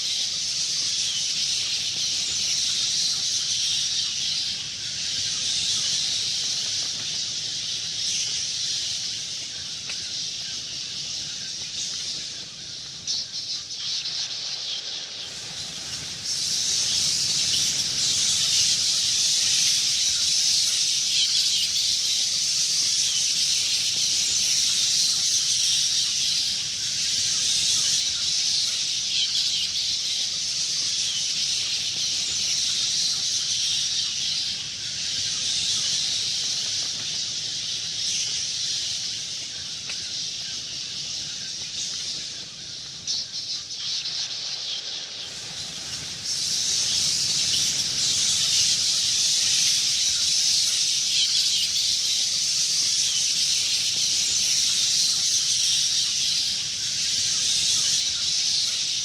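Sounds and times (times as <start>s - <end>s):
bats squeaking and chittering: 0.0s - 59.0s.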